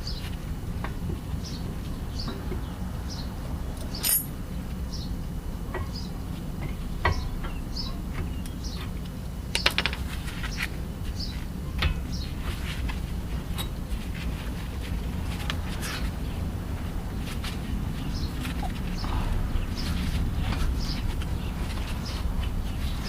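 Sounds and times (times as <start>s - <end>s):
metal tools clinking and rattling: 3.8s - 4.4s
birds chirping: 6.9s - 8.9s, 15.2s - 23.0s.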